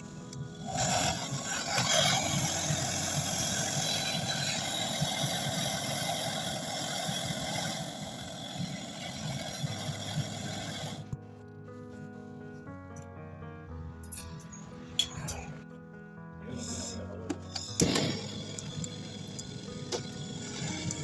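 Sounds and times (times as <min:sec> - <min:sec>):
gas torch flame hissing: 0:00.0 - 0:11.2, 0:16.7 - 0:21.0.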